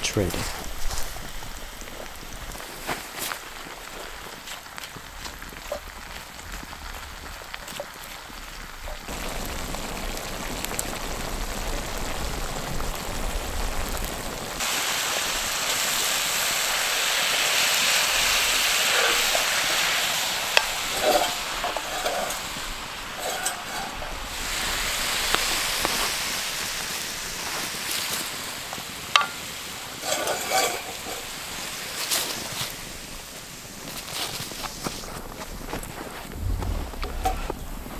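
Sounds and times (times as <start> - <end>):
food sizzling in a pan: 0.1 - 37.9
stirring scrapes: 17.8 - 24.6, 29.1 - 32.6.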